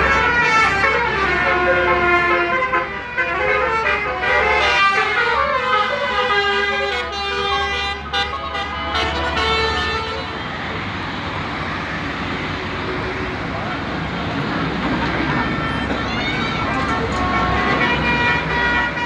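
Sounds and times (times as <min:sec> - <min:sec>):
musical air horn melody: 0:00.0 - 0:10.4, 0:15.1 - 0:19.0
vehicle noise rushing: 0:00.0 - 0:19.0.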